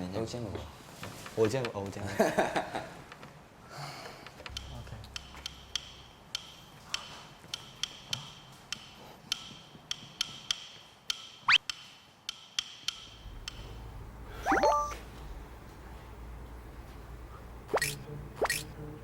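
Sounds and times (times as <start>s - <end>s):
hollow wooden percussion taps: 4.5s - 13.6s.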